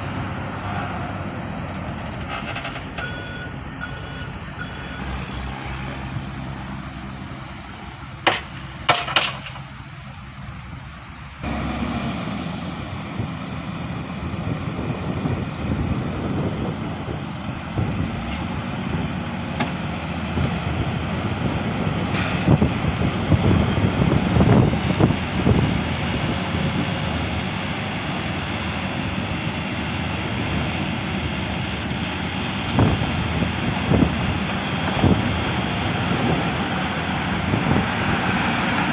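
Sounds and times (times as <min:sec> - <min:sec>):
diesel machinery rumbling: 0:00.0 - 0:38.9
metallic knocks and clanks: 0:08.2 - 0:09.9.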